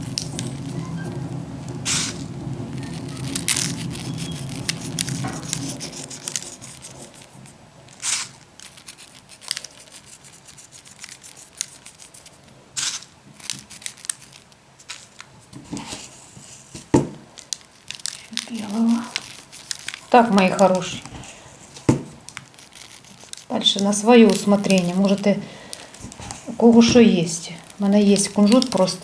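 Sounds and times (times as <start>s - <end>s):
low hum: 0.0s - 8.0s
seeds rustling and crinkling: 0.0s - 29.0s.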